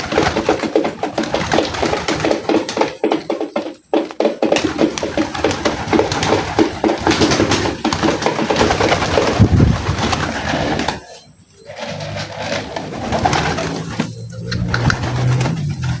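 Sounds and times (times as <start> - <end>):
pigeons cooing: 5.4 - 16.0.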